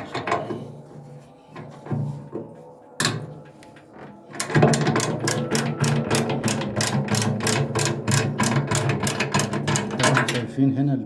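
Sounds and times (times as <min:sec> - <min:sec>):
ratchet wrench clicking: 0:05.3 - 0:10.2.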